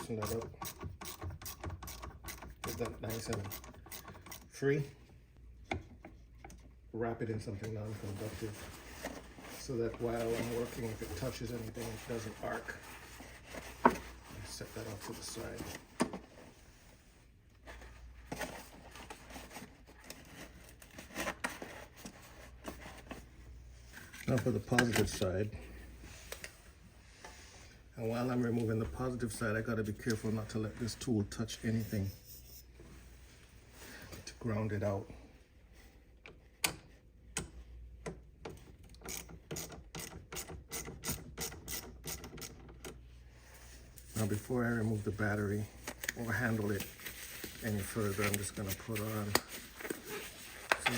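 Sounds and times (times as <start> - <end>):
hands and tools rustling: 7.5 - 35.0, 42.2 - 50.9.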